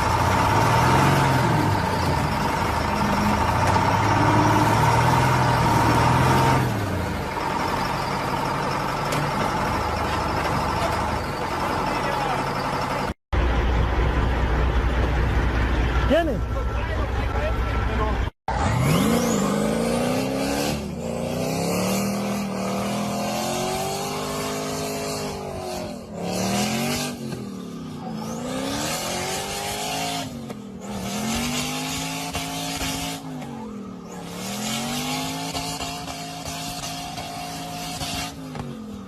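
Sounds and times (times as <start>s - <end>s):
car engine revving: 0.0s - 7.5s, 17.4s - 39.0s.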